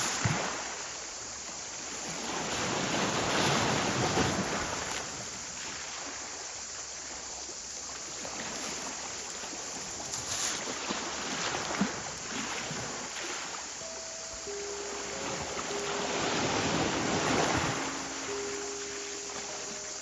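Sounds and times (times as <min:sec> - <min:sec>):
sea waves washing onto shore: 0:07.8 - 0:20.0.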